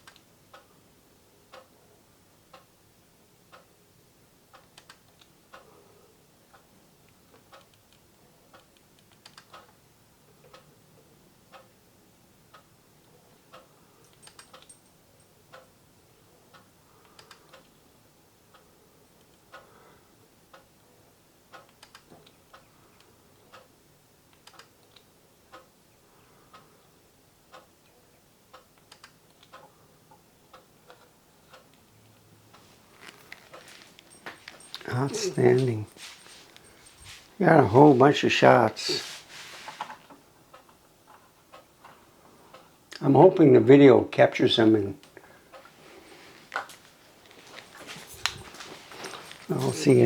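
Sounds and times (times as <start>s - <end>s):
faint steady tick: 0.0s - 0.8s, 1.4s - 1.8s, 2.4s - 3.8s, 6.4s - 11.8s, 12.4s - 15.8s, 16.5s - 20.9s, 21.5s - 34.9s, 39.8s - 43.0s.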